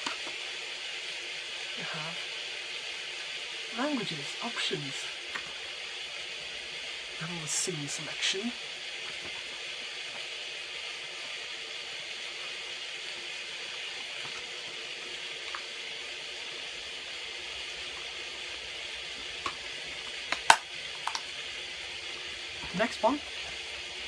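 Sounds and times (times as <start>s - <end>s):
rain hissing: 0.4s - 24.0s.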